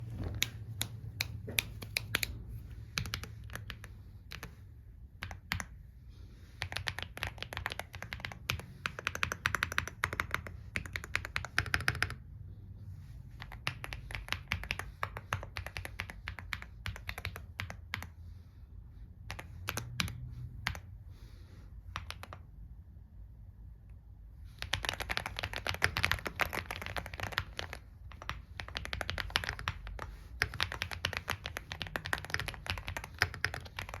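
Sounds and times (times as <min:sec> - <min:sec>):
mechanical keyboard typing: 0:02.9 - 0:04.6, 0:05.2 - 0:05.8, 0:06.6 - 0:12.2, 0:13.4 - 0:18.1, 0:19.3 - 0:20.8, 0:21.9 - 0:22.4, 0:24.5 - 0:34.0.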